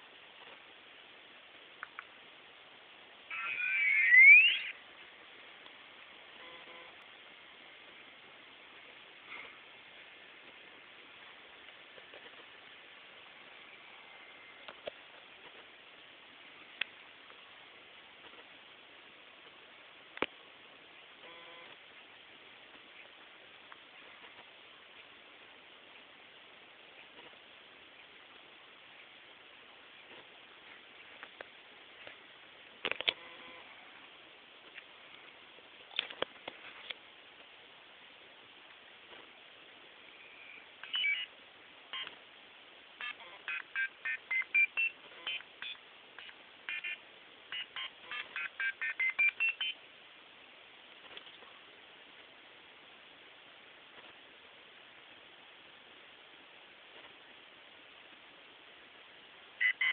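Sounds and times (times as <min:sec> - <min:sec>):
low steady hiss: 0:00.0 - 0:59.9
electronic alarm clock beeps: 0:03.3 - 0:04.7, 0:40.9 - 0:41.3, 0:43.0 - 0:45.8, 0:46.7 - 0:49.8, 0:59.6 - 0:59.9.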